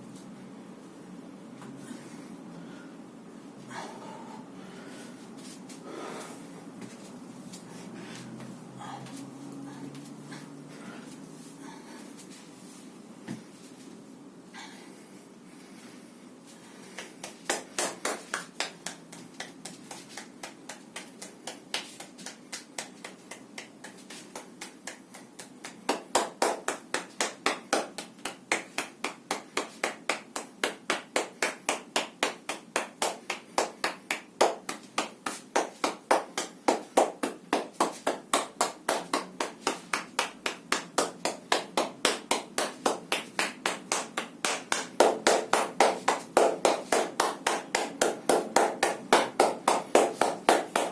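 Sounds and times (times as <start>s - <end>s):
hands slapping body: 16.9s - 50.9s.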